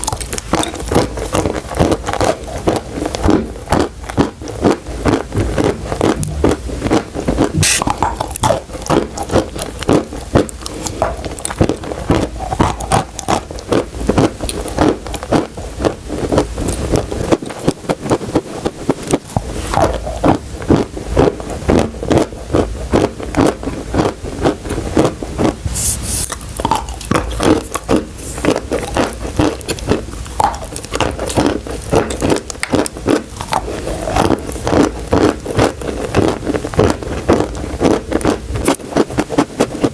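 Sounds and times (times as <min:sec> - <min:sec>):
chalk and clay crunching: 0:00.2 - 0:15.5, 0:25.4 - 0:35.4.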